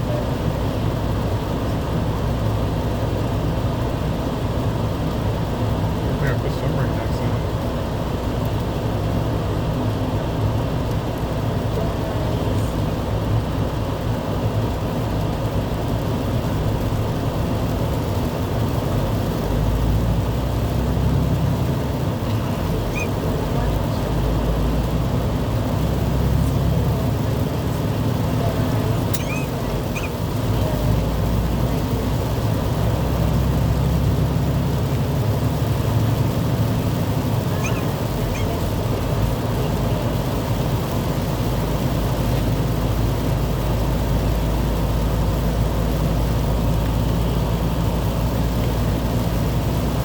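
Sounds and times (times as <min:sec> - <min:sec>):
vehicle road noise: 0:00.0 - 0:50.0.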